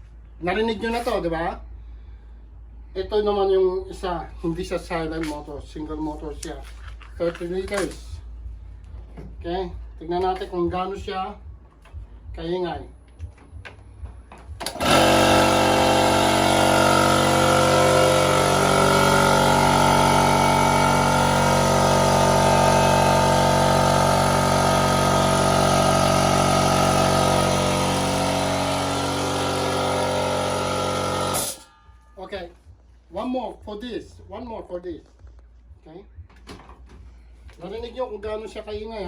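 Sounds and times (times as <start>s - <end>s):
air compressor humming: 14.5s - 31.7s.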